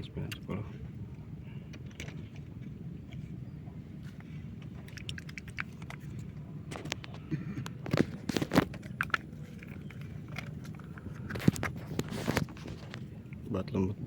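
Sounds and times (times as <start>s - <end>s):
steady low hum: 0.0s - 14.0s
dry bait mix crunching by hand: 4.0s - 13.5s.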